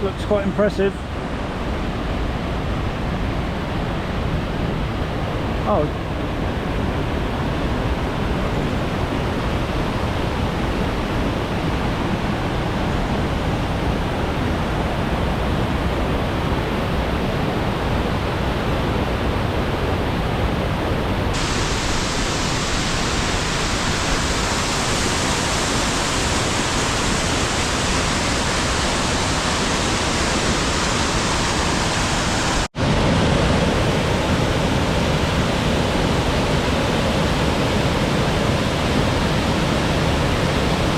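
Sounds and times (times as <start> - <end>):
waterfall rushing: 21.3 - 40.9.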